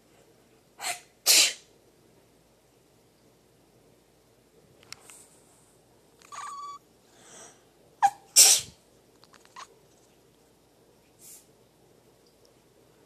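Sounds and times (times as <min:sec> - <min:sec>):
person sneezing: 0:00.8 - 0:01.7, 0:08.4 - 0:08.8.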